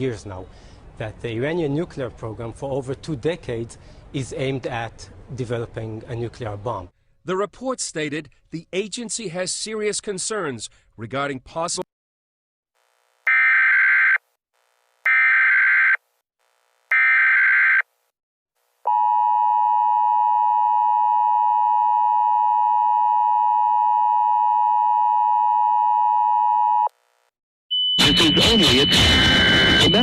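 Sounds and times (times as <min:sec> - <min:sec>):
two-tone alert signal: 0:27.7 - 0:30.0
harsh digital data screech: 0:28.0 - 0:30.0.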